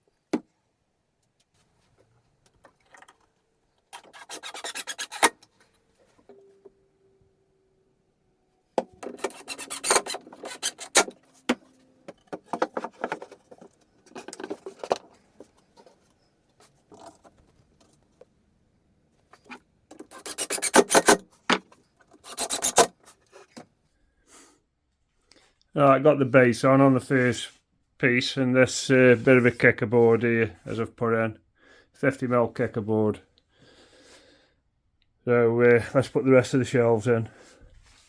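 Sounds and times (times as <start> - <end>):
rasping on plywood: 4.0 - 5.3, 9.0 - 11.6, 19.4 - 21.2, 22.2 - 22.9.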